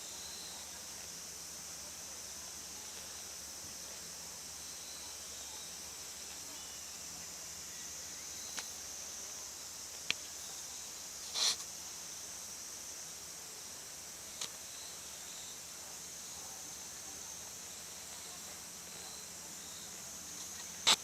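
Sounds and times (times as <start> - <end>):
steady high hiss: 0.0 - 21.0
faint clicks: 9.9 - 10.3, 14.4 - 14.6.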